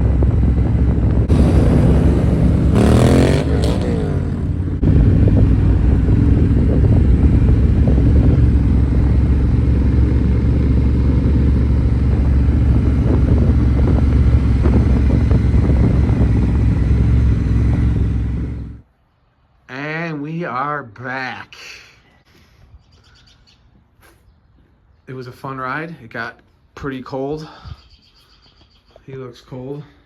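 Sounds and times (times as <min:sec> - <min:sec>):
motorcycle engine cruising: 0:00.0 - 0:18.8
road and wind noise: 0:00.0 - 0:19.7.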